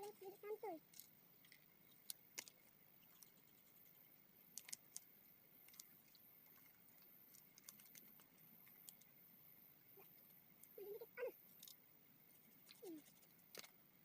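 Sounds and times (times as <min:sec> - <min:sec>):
faint scattered clicks: 0:00.0 - 0:09.4, 0:10.0 - 0:11.8
faint high tone: 0:09.9 - 0:11.4.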